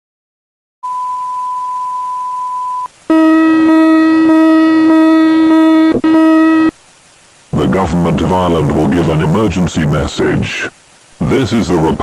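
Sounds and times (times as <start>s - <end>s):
steady pure beep: 0.8s - 6.7s
harsh buzzing alarm tone: 1.6s - 6.8s.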